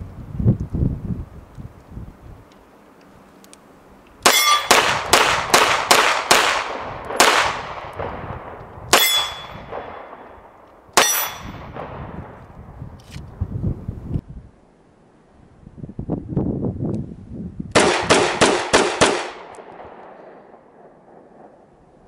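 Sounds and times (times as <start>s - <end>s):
pistol shots with echo: 4.2s - 12.0s, 17.8s - 21.7s.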